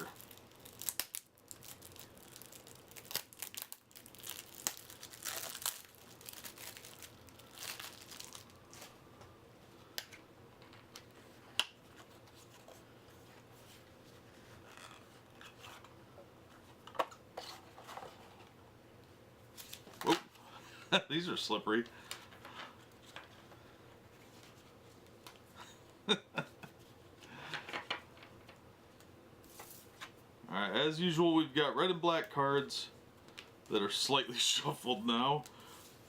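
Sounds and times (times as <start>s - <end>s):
packaging torn and crinkled: 0.0s - 9.0s.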